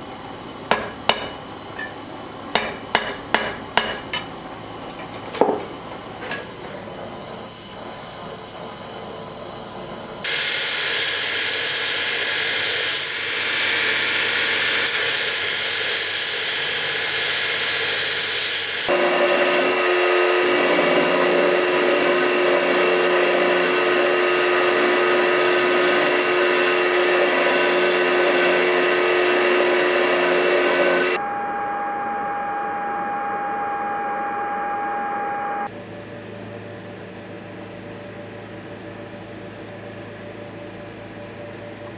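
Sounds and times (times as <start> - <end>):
power tool running: 0.0 - 6.7, 10.2 - 35.7.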